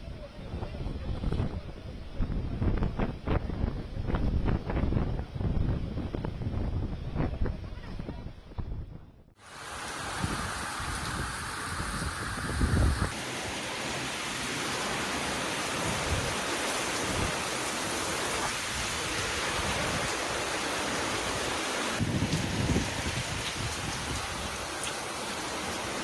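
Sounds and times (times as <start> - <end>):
wind buffeting microphone: 0.0 - 13.2, 22.0 - 24.9
heavy rain hiss: 9.4 - 26.0.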